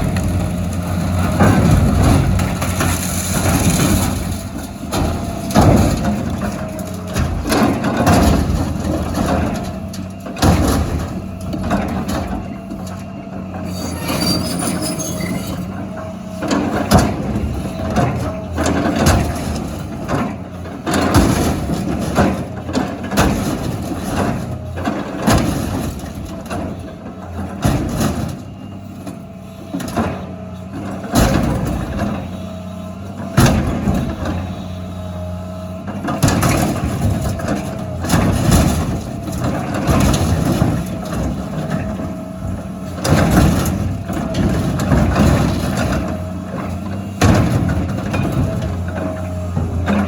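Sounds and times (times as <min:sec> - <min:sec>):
metal bangs and crunches: 0:00.0 - 0:32.3, 0:33.1 - 0:34.8, 0:35.8 - 0:50.0
excavator diesel engine running: 0:00.0 - 0:50.0.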